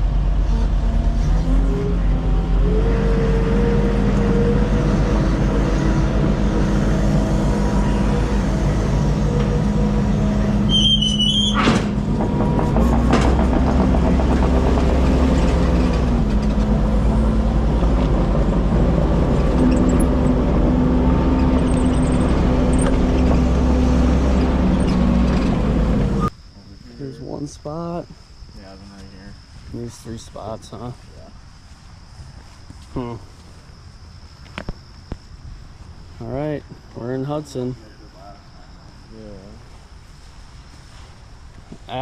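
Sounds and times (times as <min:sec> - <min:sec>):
heavy vehicle engine rumbling: 0:00.0 - 0:26.3
high squeal: 0:00.3 - 0:26.4.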